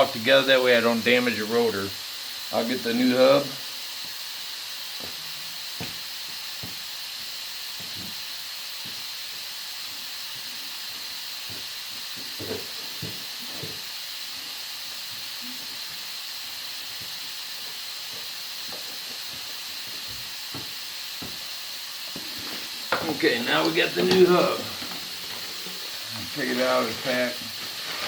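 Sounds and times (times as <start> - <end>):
steady background hiss: 0.0 - 28.0
faint high whine: 22.0 - 28.0.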